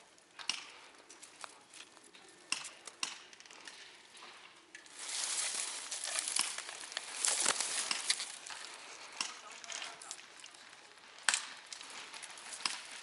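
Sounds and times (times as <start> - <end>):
dry leaves crunching and rustling: 4.8 - 13.0
twigs snapping: 4.8 - 13.0.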